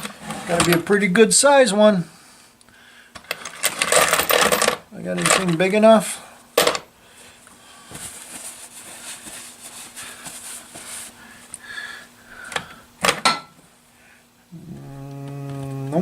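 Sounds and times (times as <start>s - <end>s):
tools rattling and rustling: 0.0s - 0.9s, 3.2s - 5.9s
faint steady hum: 0.0s - 16.0s.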